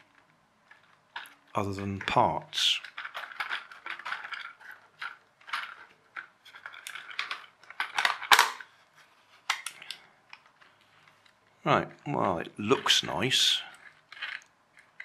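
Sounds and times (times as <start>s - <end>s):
toy car plastic clicks and knocks: 0.0s - 8.8s, 13.6s - 15.0s.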